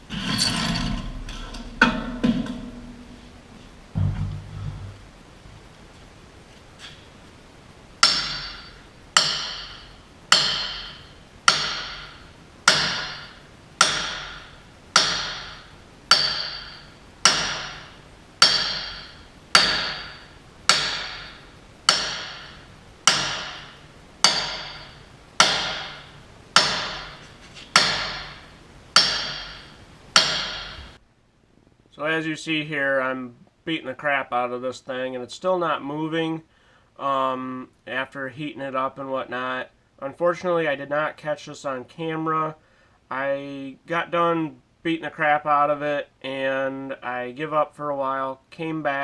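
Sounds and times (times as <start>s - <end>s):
hammer ringing on metal: 8.0s - 31.0s.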